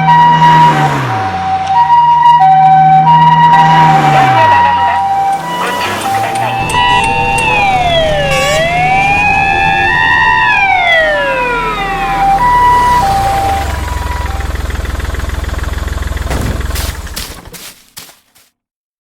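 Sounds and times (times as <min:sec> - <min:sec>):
wailing siren: 0:00.0 - 0:16.0
two-note hi-lo ambulance siren: 0:00.0 - 0:16.2
low pulsing engine rumble: 0:04.9 - 0:17.6.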